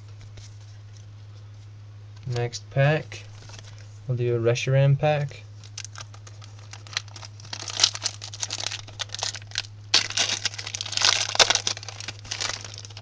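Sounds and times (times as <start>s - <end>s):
steady low hum: 0.0s - 13.0s
foil wrapper crinkling and tearing: 5.6s - 13.0s.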